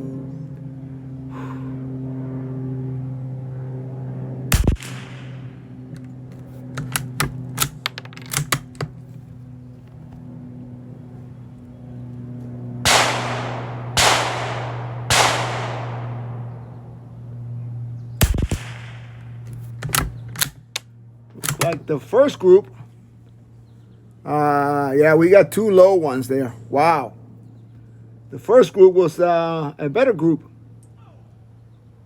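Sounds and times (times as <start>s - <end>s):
steady low hum: 0.0s - 32.0s
rifle gunshots echoing: 4.5s - 8.4s, 12.8s - 17.0s, 18.2s - 19.4s
sharp clicks: 4.5s - 9.0s, 18.2s - 21.8s.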